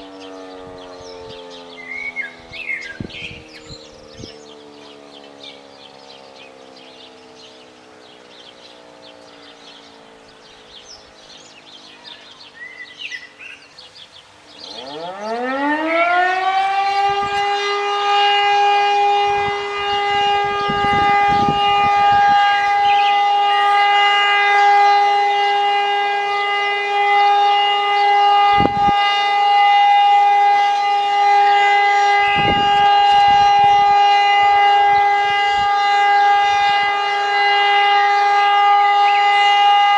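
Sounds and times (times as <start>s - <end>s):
birds chirping: 0.0s - 39.9s
civil defence siren wailing: 0.0s - 39.9s
distant siren winding down: 0.0s - 39.9s.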